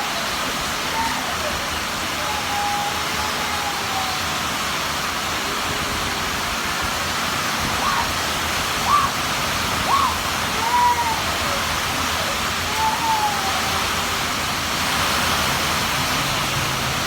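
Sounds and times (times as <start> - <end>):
heavy rain falling: 0.0 - 17.0
high curved voice-like calls: 7.7 - 14.4.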